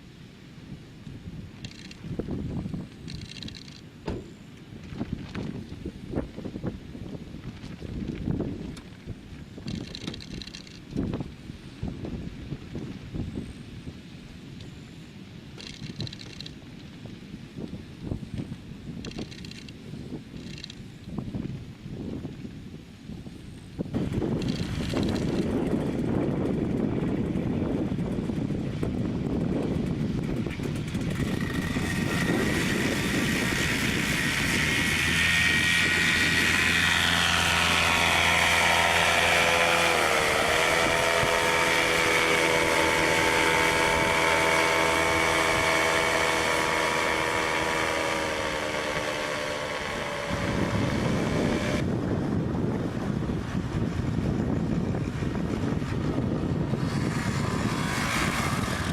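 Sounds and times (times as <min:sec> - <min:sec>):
wind buffeting microphone: 0:00.0 - 0:58.9
paramotor engine drone: 0:23.4 - 0:58.9.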